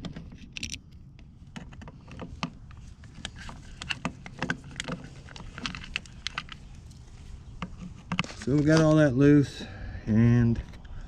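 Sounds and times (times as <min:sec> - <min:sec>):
light clicks and taps of parts: 0:00.0 - 0:07.0.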